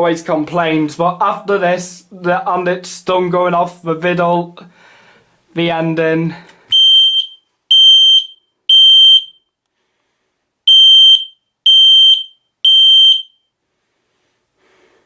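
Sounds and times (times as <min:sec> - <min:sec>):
smoke alarm beeping: 0:06.7 - 0:09.6, 0:10.7 - 0:13.6.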